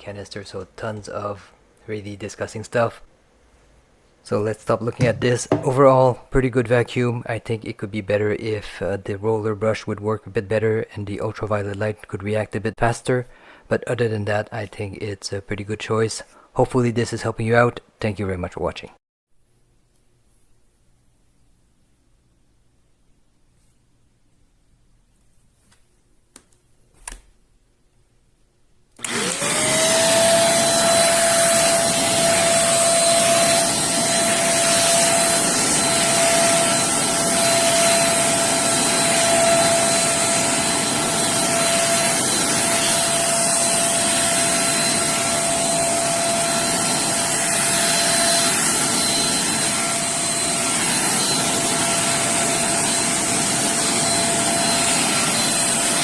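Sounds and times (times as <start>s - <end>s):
vacuum cleaner motor whining: 4.9s - 5.8s, 29.0s - 56.0s.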